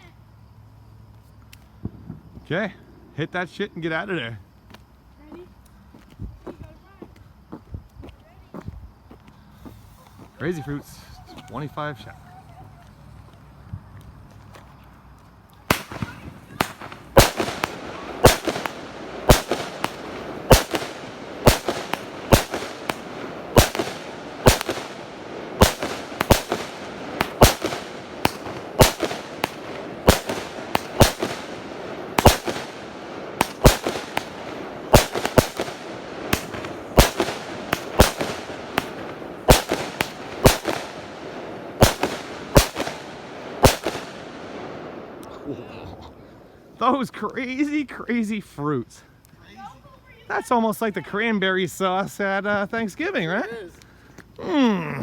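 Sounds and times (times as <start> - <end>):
firework bangs: 1.8 - 2.5, 15.7 - 46.5.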